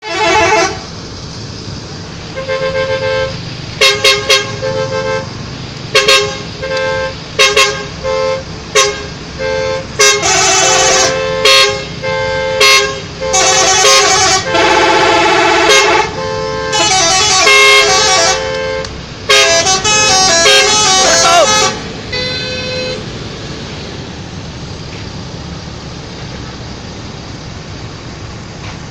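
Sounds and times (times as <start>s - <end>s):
multi-tone bus horn toots: 0.0s - 1.0s, 2.3s - 23.2s
low engine rumble: 0.0s - 28.9s.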